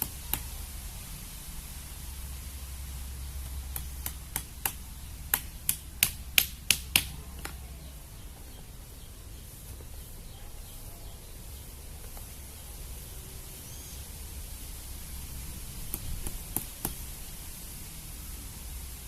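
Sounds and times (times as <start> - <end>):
sharp clicks: 0.0 - 0.6.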